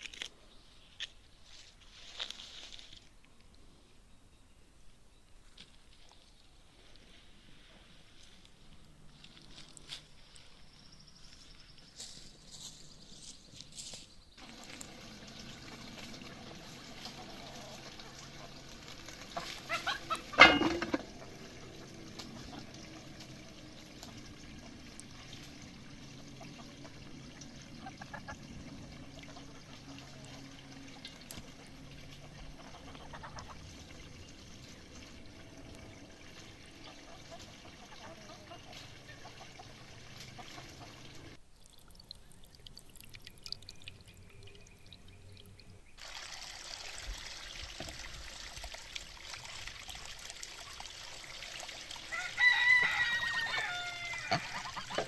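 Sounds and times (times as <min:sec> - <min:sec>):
water pouring and trickling: 0:14.4 - 0:55.0.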